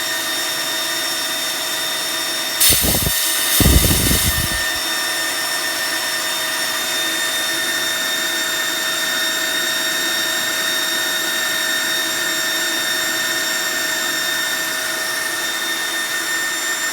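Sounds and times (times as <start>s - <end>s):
air compressor humming and whining: 2.6s - 4.8s.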